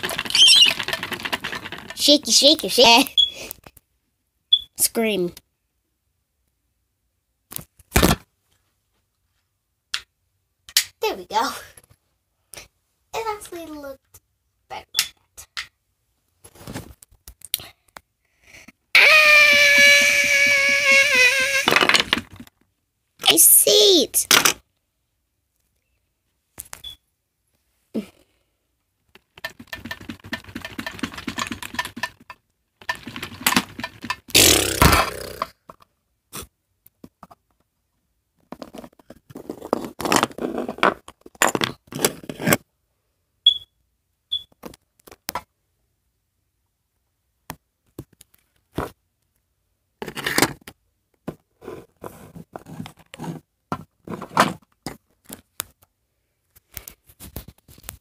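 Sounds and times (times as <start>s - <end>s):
toys scraping and clattering: 0.0s - 2.9s.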